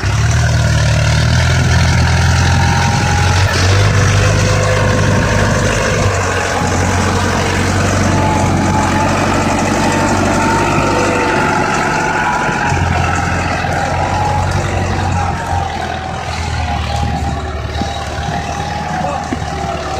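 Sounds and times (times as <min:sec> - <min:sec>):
tractor diesel engine running: 0:00.0 - 0:19.9
high whine: 0:01.6 - 0:19.9.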